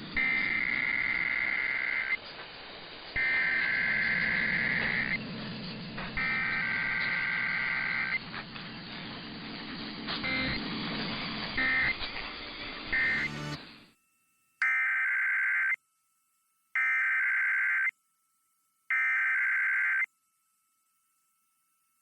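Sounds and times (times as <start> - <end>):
rasping two-tone data signal: 0.2 - 2.2, 3.2 - 5.2, 6.2 - 8.3, 10.1 - 10.6, 11.6 - 12.2, 12.9 - 13.9, 14.6 - 15.8, 16.8 - 18.0, 18.9 - 20.1.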